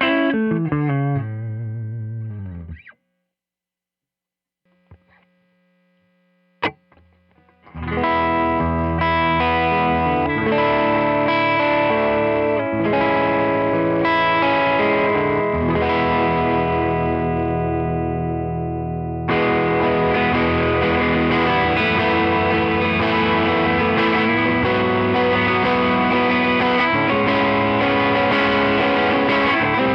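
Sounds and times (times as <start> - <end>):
electric guitar strumming chords: 0.0 - 3.0, 6.6 - 29.9
amp hum: 1.6 - 10.2
sharp click: 6.6 - 7.2.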